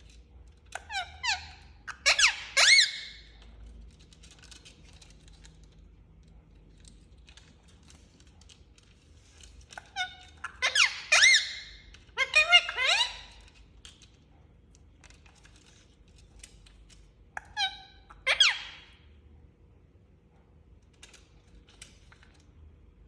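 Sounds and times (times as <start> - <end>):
parakeet shrill calls: 0.8 - 3.4, 9.8 - 13.6, 17.4 - 19.0.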